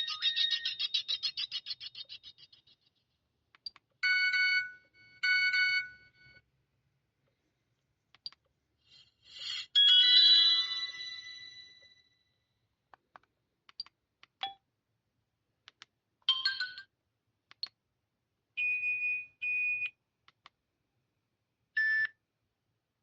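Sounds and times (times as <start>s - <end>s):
click: 3.5s - 3.9s, 8.1s - 8.5s, 12.9s - 14.6s, 15.6s - 15.9s, 17.5s - 17.8s, 20.2s - 20.6s
phone ringtone: 9.3s - 12.0s.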